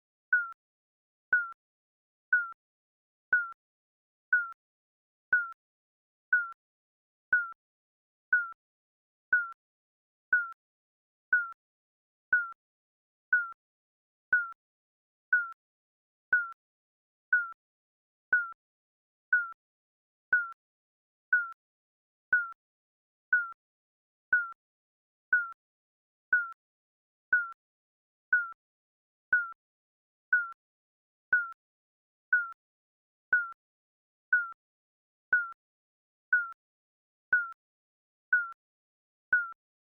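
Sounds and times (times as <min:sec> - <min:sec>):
countdown timer beeps: 0:00.3 - 0:00.6, 0:01.3 - 0:01.6, 0:02.3 - 0:02.6, 0:03.3 - 0:03.6, 0:04.3 - 0:04.6, 0:05.3 - 0:05.6, 0:06.3 - 0:06.6, 0:07.3 - 0:07.6, 0:08.3 - 0:08.6, 0:09.3 - 0:09.6, 0:10.3 - 0:10.6, 0:11.3 - 0:11.6, 0:13.3 - 0:13.6, 0:17.3 - 0:17.6, 0:18.3 - 0:18.6, 0:19.3 - 0:19.6, 0:23.3 - 0:23.6, 0:25.3 - 0:25.6, 0:26.3 - 0:26.6, 0:27.3 - 0:27.6, 0:28.3 - 0:28.6, 0:29.3 - 0:29.6, 0:30.3 - 0:30.6, 0:31.3 - 0:31.6, 0:33.3 - 0:33.6, 0:34.3 - 0:34.6, 0:35.3 - 0:35.6, 0:38.3 - 0:38.6, 0:39.3 - 0:39.6.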